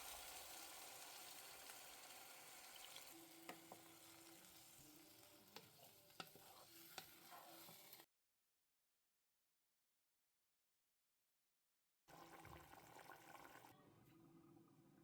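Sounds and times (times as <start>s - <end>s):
faint sizzling in a pot: 0.0s - 8.1s.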